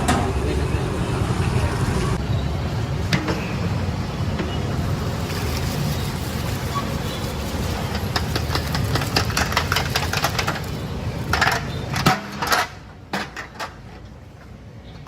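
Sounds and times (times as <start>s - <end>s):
utensils clattering in cooking pot: 5.2s - 13.7s.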